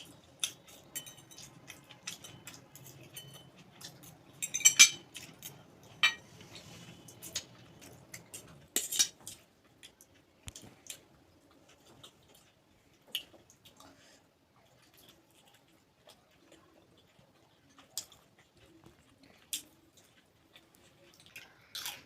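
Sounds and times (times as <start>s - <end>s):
cutlery clinking on plate: 0.4s - 5.1s, 6.0s - 6.3s.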